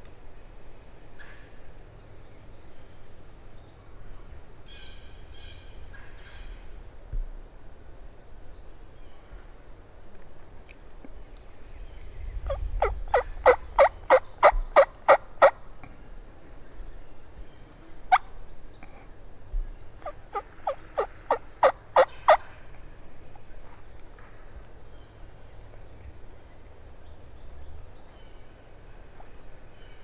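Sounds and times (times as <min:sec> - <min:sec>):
wild turkey calling: 0:12.5 - 0:15.6, 0:19.9 - 0:22.7.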